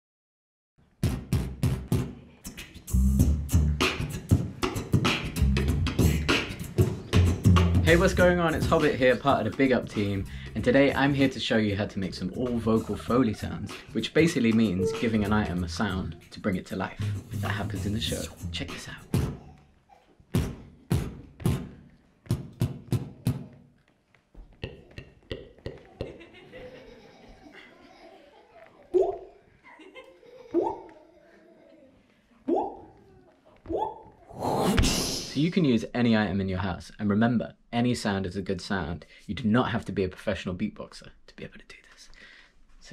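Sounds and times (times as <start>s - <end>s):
beatboxing: 1.0s - 11.4s, 12.0s - 19.5s, 24.6s - 26.2s, 33.7s - 35.5s.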